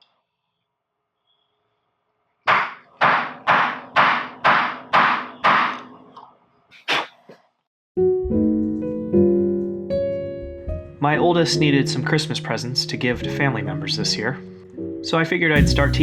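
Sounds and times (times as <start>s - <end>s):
heavy ringing knocks: 2.5s - 5.8s.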